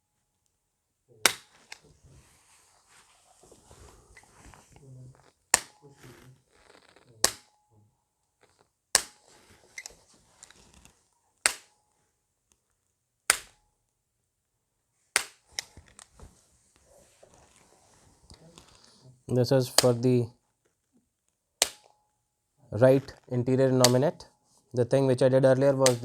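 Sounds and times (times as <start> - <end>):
adjusting instrument clicking: 19.7 - 20.0, 23.8 - 24.1.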